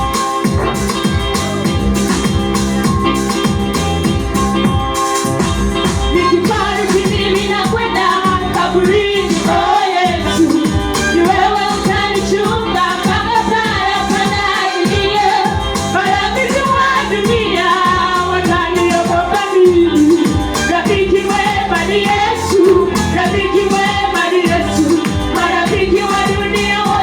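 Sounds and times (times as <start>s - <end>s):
percussion beat: 0.0s - 27.0s
choir singing gospel: 6.0s - 27.0s.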